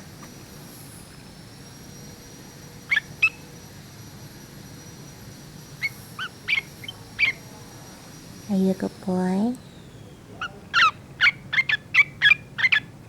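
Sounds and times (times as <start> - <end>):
bird chirping: 5.8 - 7.5, 8.5 - 12.9.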